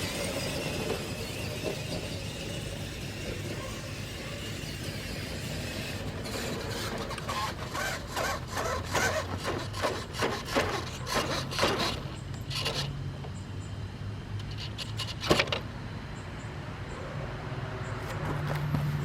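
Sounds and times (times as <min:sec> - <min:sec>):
bicycle scratchy rubbing: 0:00.0 - 0:12.9.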